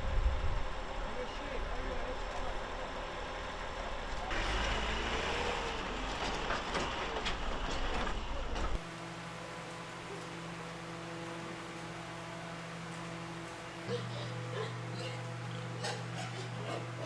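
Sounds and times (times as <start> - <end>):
vehicle engine rumble: 0.0 - 16.0.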